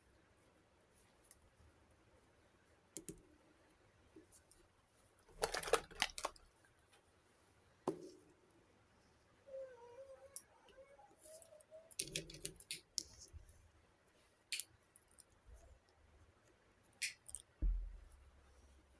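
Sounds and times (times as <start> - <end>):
plastic toy pieces clicking: 5.4 - 6.4, 12.0 - 13.2.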